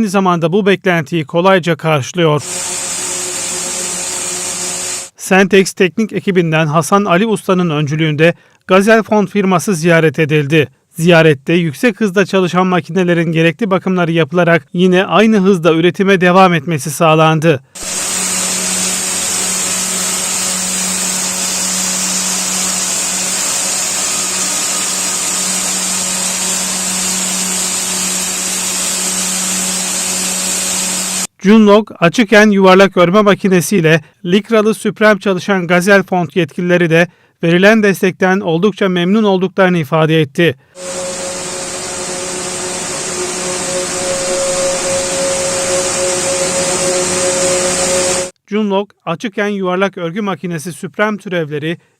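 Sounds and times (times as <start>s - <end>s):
knitting machine humming and hissing: 2.4s - 5.2s, 17.8s - 31.3s, 40.8s - 48.3s.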